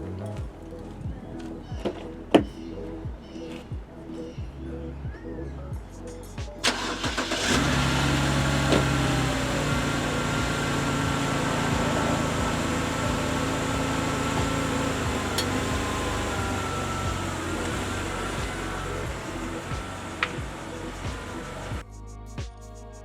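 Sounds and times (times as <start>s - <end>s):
car engine cranking and starting: 6.6s - 21.8s
car engine idling: 6.6s - 21.8s.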